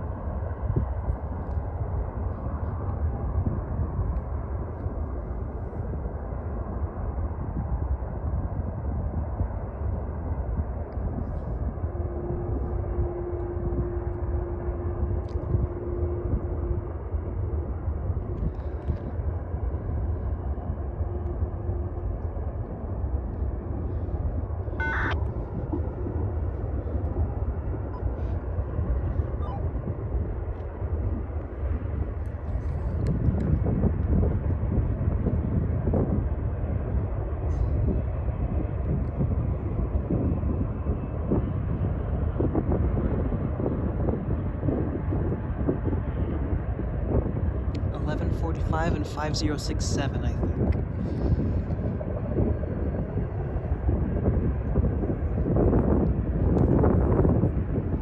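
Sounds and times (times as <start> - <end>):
steady tone: 24.7 - 26.5.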